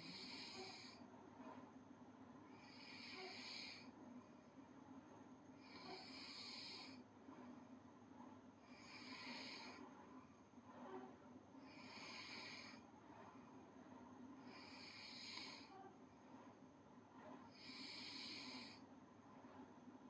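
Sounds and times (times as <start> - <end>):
girl snoring faintly: 0.0 - 1.0, 2.6 - 3.9, 14.4 - 16.0.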